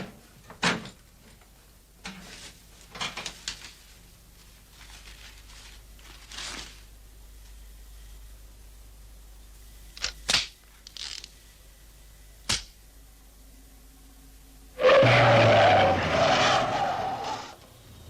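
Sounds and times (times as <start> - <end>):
steady low hum: 3.5 - 14.8.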